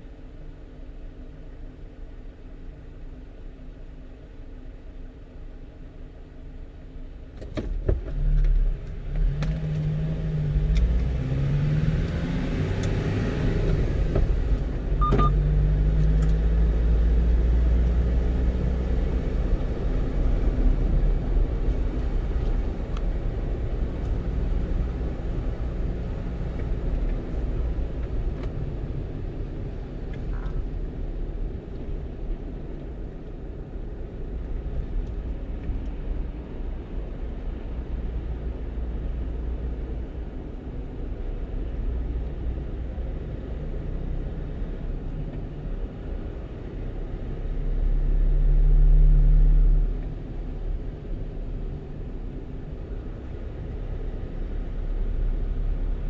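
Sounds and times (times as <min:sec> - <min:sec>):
truck engine accelerating: 0:08.4 - 0:36.4
click with short tone: 0:15.0 - 0:15.4.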